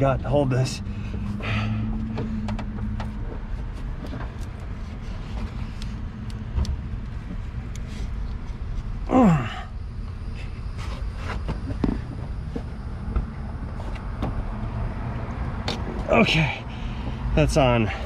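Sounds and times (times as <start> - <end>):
steady low rumble: 0.0 - 18.0
man groaning: 9.1 - 9.7.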